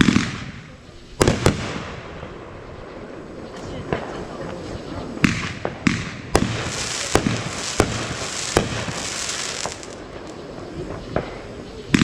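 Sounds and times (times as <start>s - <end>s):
fireworks bangs: 1.2s - 2.2s, 5.2s - 11.4s
fireworks crackling hiss: 6.3s - 12.0s.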